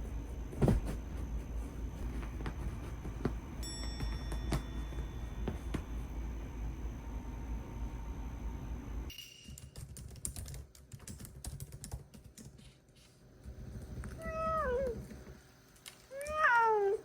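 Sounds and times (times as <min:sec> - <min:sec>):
cat meowing: 0:14.2 - 0:15.0, 0:16.1 - 0:17.0.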